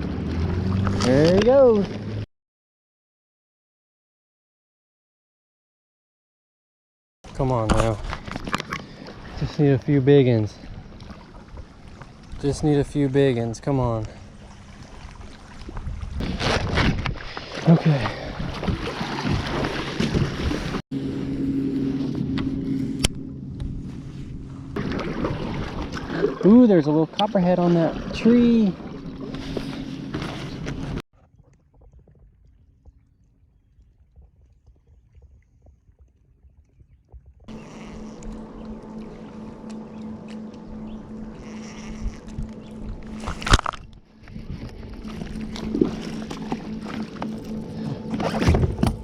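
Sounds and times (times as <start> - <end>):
boat motor droning: 0.0 - 2.2, 7.3 - 16.4, 17.4 - 31.0, 37.4 - 49.0
water lapping: 7.3 - 23.1, 23.7 - 49.0
rushing water: 24.8 - 30.2.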